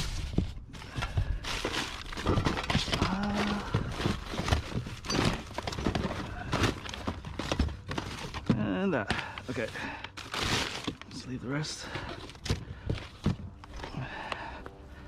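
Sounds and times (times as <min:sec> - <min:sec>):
hard objects knocking and clattering: 0:01.0 - 0:09.3.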